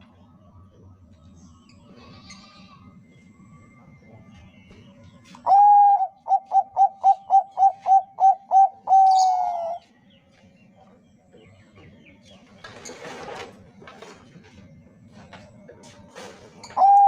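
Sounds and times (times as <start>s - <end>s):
dove cooing song: 4.8s - 10.0s, 16.4s - 17.0s.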